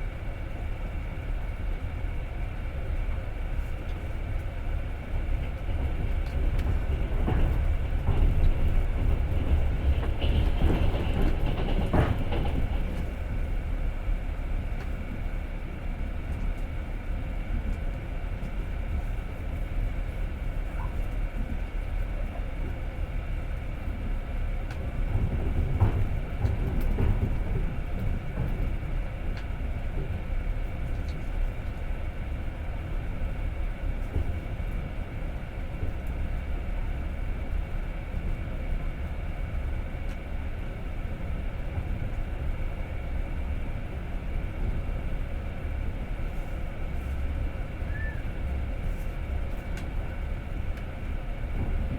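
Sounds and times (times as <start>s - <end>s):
train rumbling from inside carriage: 0.0s - 51.9s
wheels clattering over rail joints: 6.4s - 13.2s.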